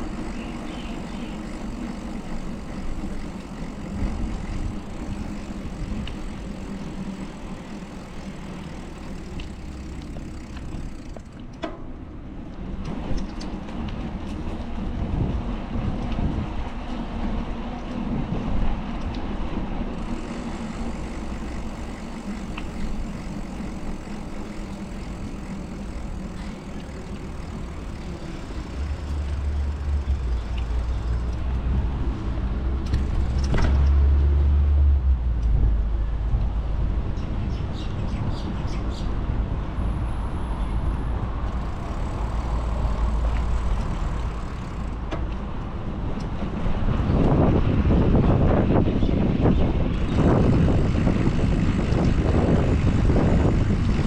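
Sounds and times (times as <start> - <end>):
cars passing: 0.0 - 15.8, 19.6 - 37.5, 38.6 - 48.0
deep rumble of large vehicle: 0.0 - 54.0.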